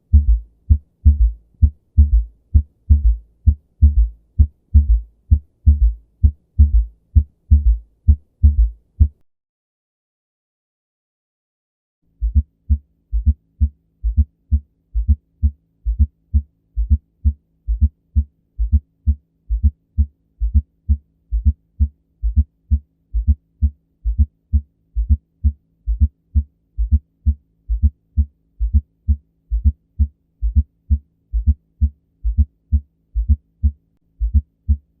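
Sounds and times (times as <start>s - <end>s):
faint steady hum: 0.0s - 9.2s
heartbeat thuds through stethoscope: 0.1s - 9.2s, 12.2s - 15.2s, 15.9s - 18.0s, 19.5s - 20.7s, 23.2s - 24.3s, 25.0s - 25.2s, 25.9s - 26.2s, 26.8s - 34.9s.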